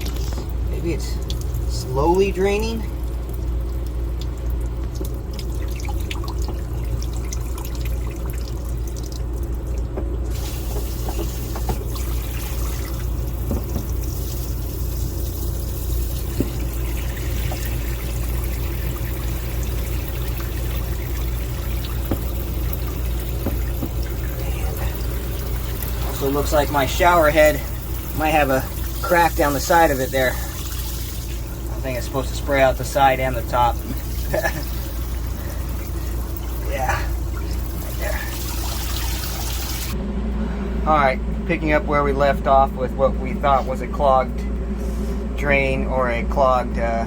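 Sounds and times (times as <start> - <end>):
shower water spraying: 10.3 - 40.0.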